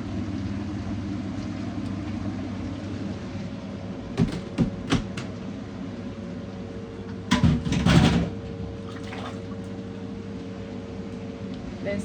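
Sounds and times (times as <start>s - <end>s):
sharp knocks: 4.2s - 5.3s.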